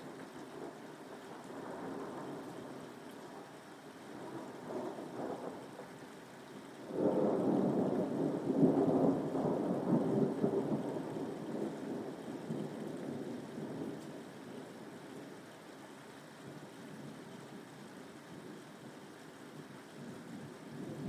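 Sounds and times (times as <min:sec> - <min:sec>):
steady rain: 0:00.0 - 0:21.0.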